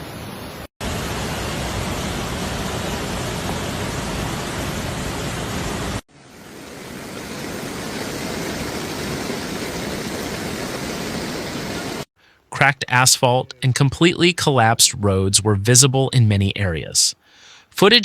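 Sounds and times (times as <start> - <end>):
heavy rain and rushing floodwater: 0.0 - 12.1.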